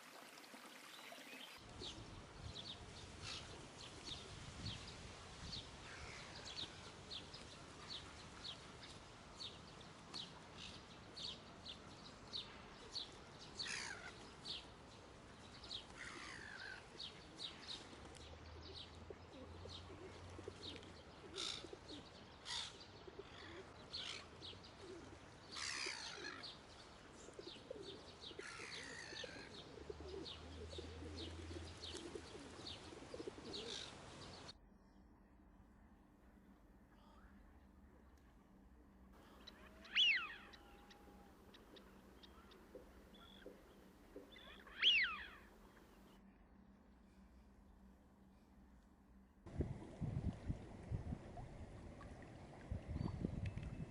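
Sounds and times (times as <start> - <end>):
bird calls falling in pitch: 39.5 - 41.4, 44.3 - 45.4
bird short high chirps: 39.8 - 40.6, 44.4 - 45.4.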